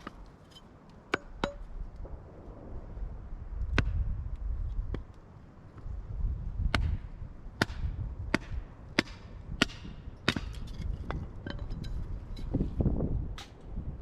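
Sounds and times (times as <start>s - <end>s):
hatchet chopping firewood: 0.0s - 1.8s, 6.6s - 12.2s.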